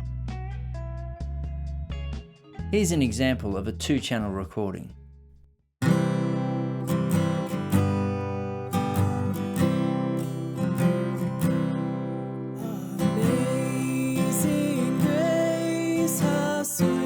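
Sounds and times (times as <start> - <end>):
acoustic guitar strumming: 5.8 - 17.0
person singing: 12.6 - 17.0.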